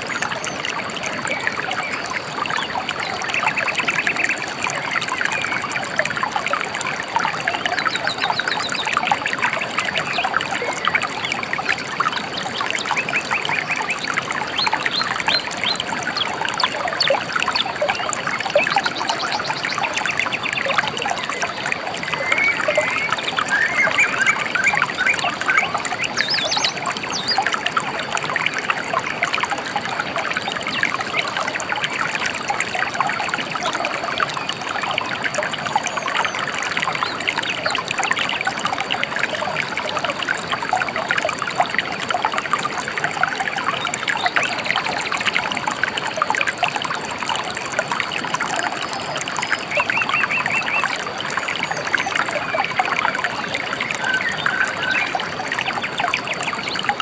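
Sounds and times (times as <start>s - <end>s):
river trickling and babbling: 0.0s - 57.0s
bird trilling: 22.0s - 26.8s.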